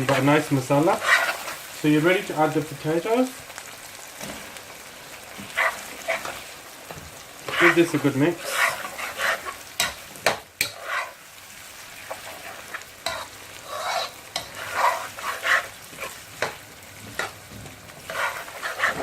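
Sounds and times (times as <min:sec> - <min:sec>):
utensil scraping in frying pan: 0:00.0 - 0:03.2, 0:04.1 - 0:19.0
food sizzling: 0:00.0 - 0:19.0
utensil clicking on pan: 0:08.5 - 0:11.1.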